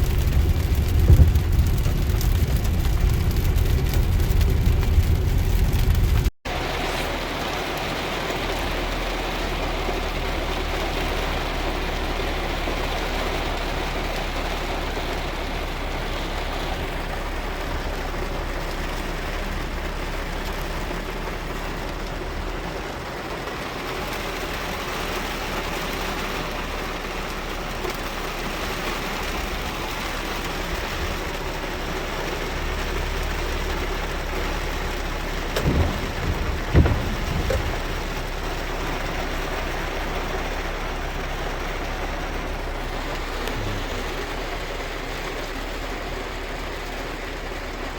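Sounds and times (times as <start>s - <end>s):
car engine running low: 0.0s - 47.9s
rain on car windshield: 0.0s - 47.9s
low thumps: 0.3s - 6.3s, 35.3s - 38.8s.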